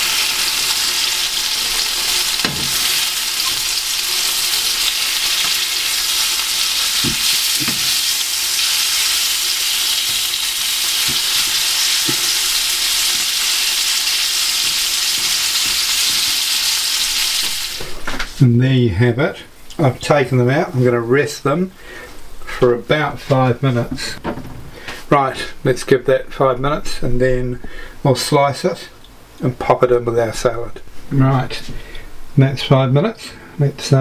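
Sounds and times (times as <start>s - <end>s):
meat sizzling in a frying pan: 0.0s - 18.4s.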